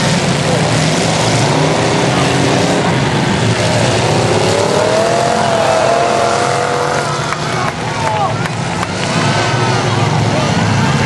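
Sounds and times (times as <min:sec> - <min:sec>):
car engines running: 0:00.0 - 0:11.0
engine revving: 0:00.0 - 0:11.0.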